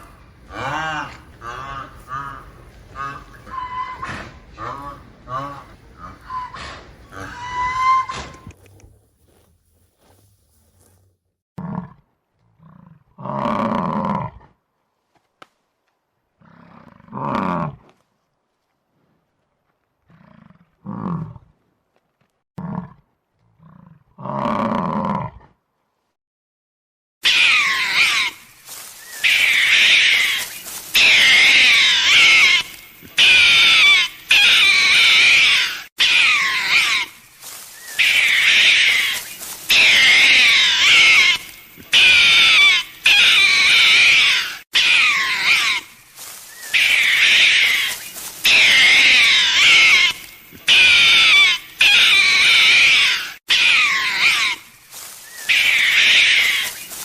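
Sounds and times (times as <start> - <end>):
animal high-pitched calls: 0.0 - 8.5, 27.2 - 45.9, 46.5 - 57.0.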